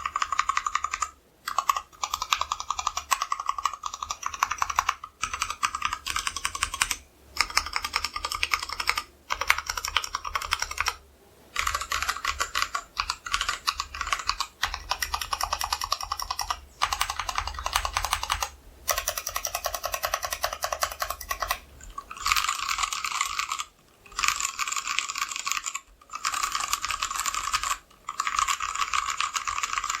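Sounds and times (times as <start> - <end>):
fast typing on mechanical keyboard: 0.0 - 30.0.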